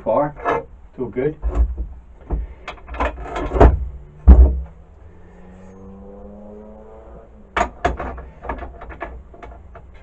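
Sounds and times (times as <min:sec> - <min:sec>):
faint low rising hum: 0:03.8 - 0:07.6
metal parts knocking and clattering: 0:07.6 - 0:10.0.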